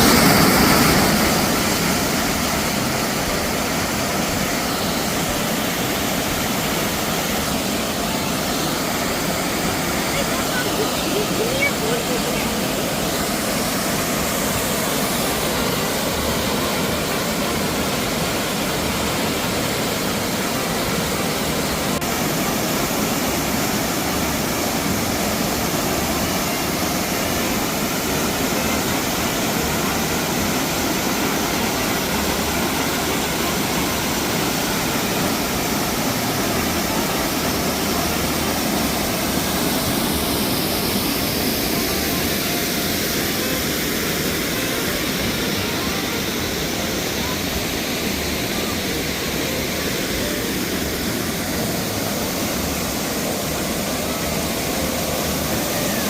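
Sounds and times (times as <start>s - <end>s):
waterfall rushing: 0.0s - 56.0s.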